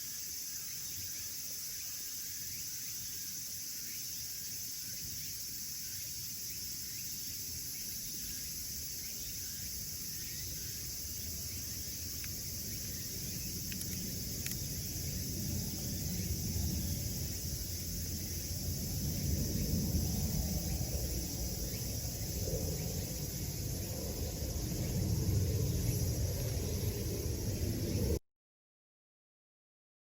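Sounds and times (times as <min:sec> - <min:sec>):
insects chirring: 0:00.0 - 0:28.2
low rumble: 0:13.1 - 0:28.2.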